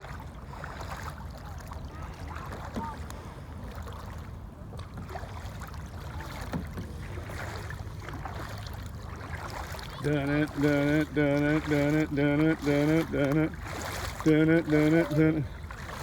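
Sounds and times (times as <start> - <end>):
small splashes: 0.0 - 16.0
water lapping around kayak: 0.0 - 16.0
gurgling blips: 9.4 - 16.0.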